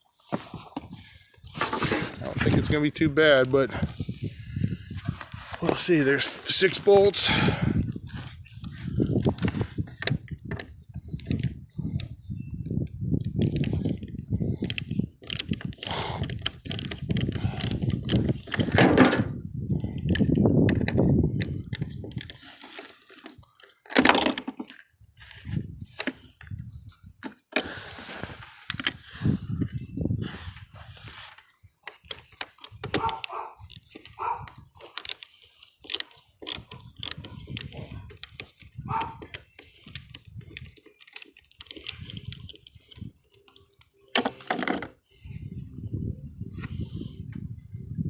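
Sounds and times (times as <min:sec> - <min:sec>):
metal parts clicking and rattling: 0:08.2 - 0:19.2, 0:19.8 - 0:26.6, 0:31.3 - 0:45.0.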